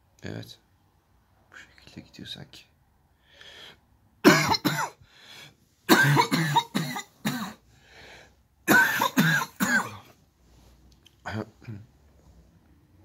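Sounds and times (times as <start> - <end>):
man coughing: 4.2 - 5.0, 5.9 - 7.6, 8.7 - 10.1.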